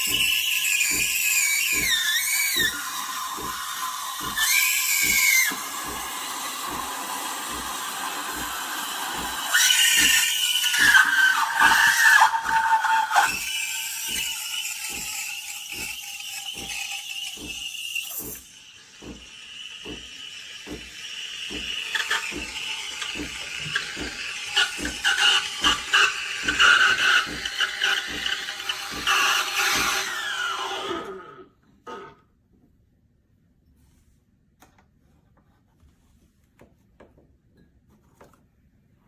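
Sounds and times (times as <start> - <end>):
espresso steam wand hissing: 0.0 - 30.7.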